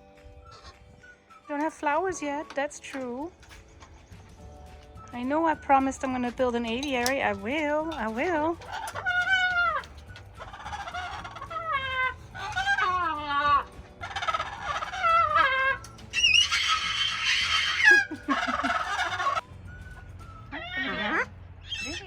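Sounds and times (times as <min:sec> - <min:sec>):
parrots calling: 0:06.8 - 0:22.0
parrot screeching harshly: 0:08.6 - 0:19.4, 0:20.5 - 0:22.0.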